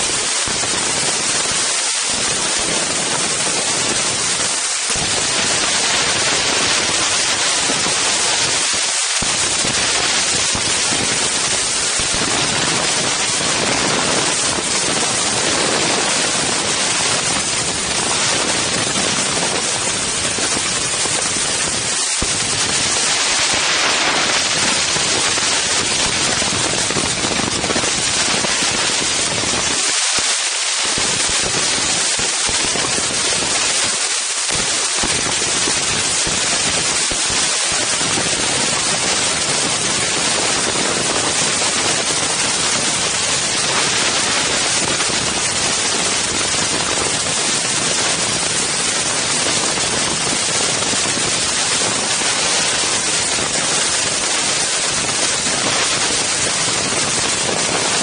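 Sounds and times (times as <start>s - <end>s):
wind buffeting microphone: 0.0s - 30.0s.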